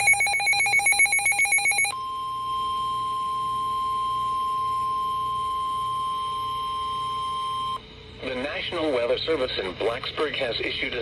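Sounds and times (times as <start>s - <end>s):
warbling electronic alert tone: 0.0s - 1.9s
steady high alarm tone: 0.0s - 7.8s.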